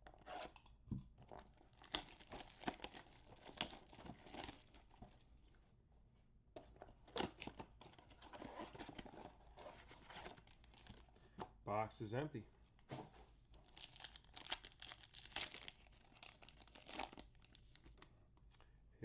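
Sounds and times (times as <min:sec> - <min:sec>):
card packs crinkling: 0:01.3 - 0:05.1, 0:07.1 - 0:11.1, 0:13.6 - 0:18.6.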